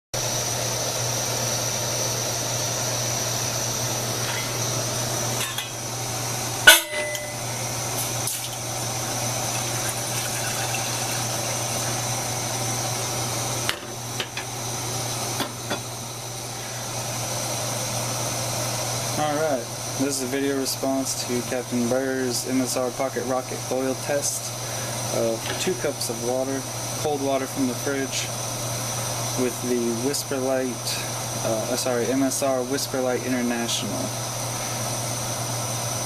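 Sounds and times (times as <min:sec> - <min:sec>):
stove burner hissing: 0:00.2 - 0:36.0.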